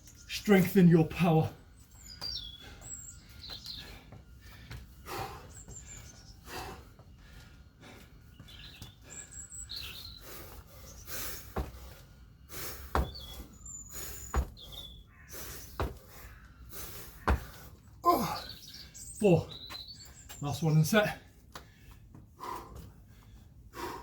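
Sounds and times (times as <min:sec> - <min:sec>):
birds chirping: 0:00.0 - 0:24.0
heavy thuds of feet landing: 0:11.2 - 0:14.8, 0:15.5 - 0:18.4.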